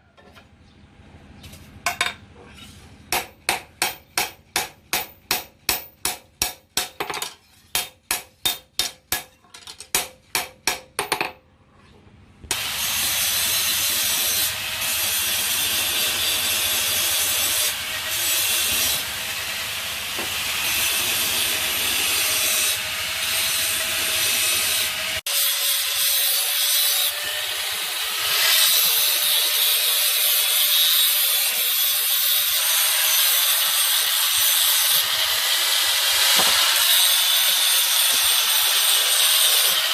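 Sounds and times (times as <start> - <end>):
hammer on steel: 3.1 - 11.4
power grinder on steel: 12.5 - 39.9.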